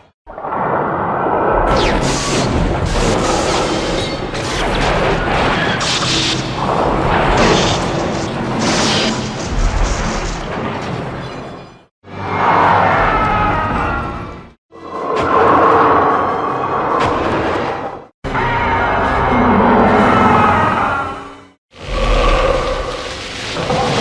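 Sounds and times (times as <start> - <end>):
booms blasts and crashes: 1.6 - 11.2
bursts of hiss: 21.8 - 24.0.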